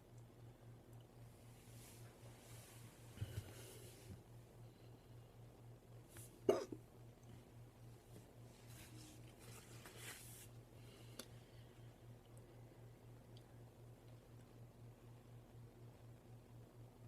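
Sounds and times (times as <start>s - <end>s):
faint low hum: 0.0s - 17.0s
person hiccuping: 6.5s - 6.8s.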